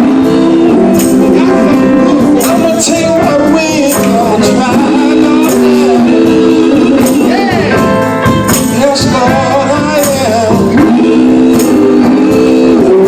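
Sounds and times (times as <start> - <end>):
male vocal group singing gospel: 0.0 - 13.0
tambourine shaking: 6.9 - 12.0.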